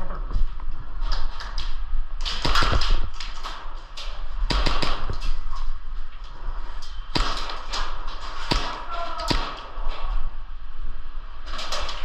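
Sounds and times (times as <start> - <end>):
gas pistol shots: 2.2 - 3.1, 7.1 - 9.8.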